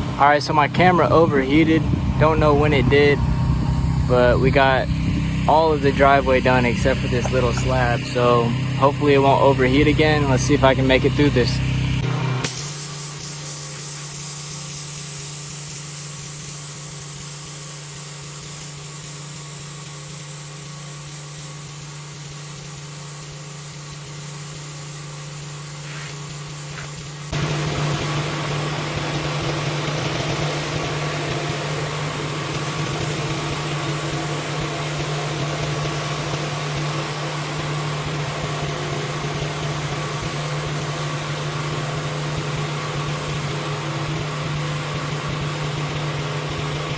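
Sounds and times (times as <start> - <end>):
pressure washer engine hum: 0.0 - 46.9
water spraying hiss: 12.4 - 28.3.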